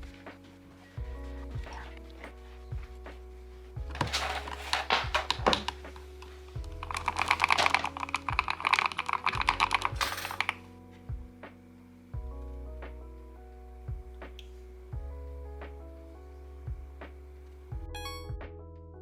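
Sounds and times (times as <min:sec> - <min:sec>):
mechanical keyboard typing: 0:06.8 - 0:10.6.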